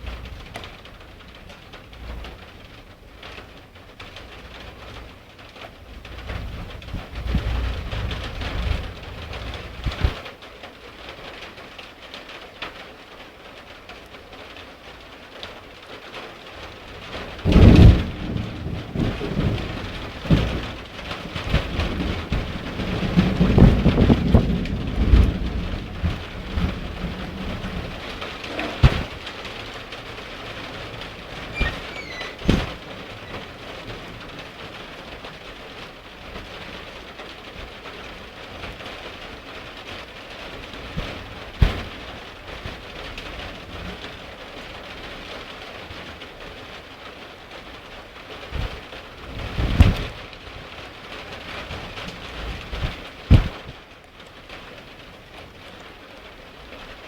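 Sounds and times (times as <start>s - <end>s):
thunder rumbling and clapping: 0.0s - 10.3s, 16.6s - 45.6s, 48.4s - 54.5s
rain falling steadily: 0.0s - 57.0s.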